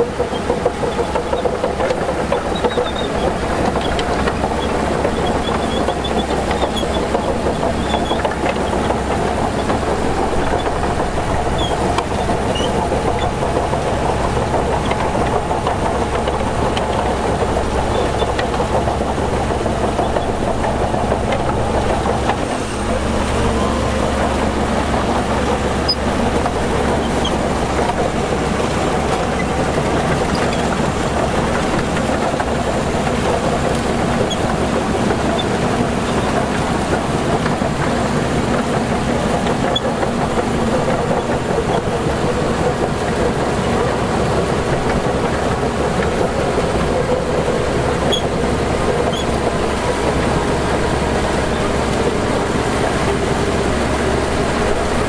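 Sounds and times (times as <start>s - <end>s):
heavy diesel engine running: 0.0s - 55.0s.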